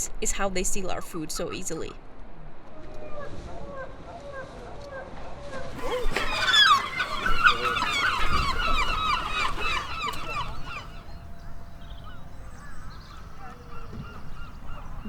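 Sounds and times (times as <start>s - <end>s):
gulls calling: 5.8s - 15.0s.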